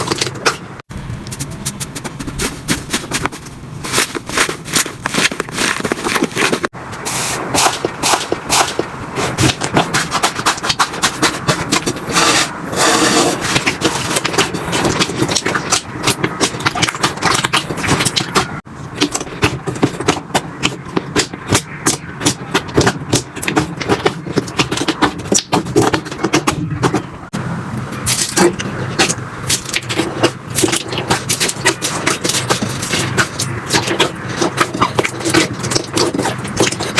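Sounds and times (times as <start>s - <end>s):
slime squished by hand: 1.3s - 6.7s, 28.0s - 36.9s.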